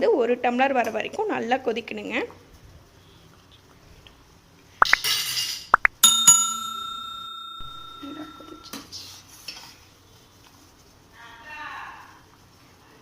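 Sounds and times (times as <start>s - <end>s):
metal pot ringing: 6.0s - 8.8s.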